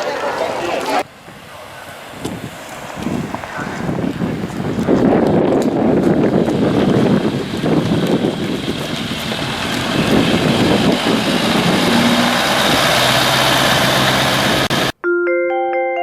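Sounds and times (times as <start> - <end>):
heavy vehicle engine running: 0.0 - 14.9.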